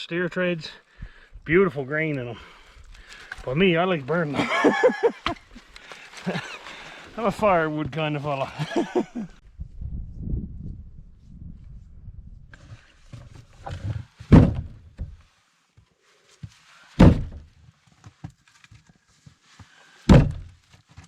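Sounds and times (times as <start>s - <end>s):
heavy wooden thunks: 13.6s - 15.2s, 17.0s - 17.5s, 20.1s - 20.6s.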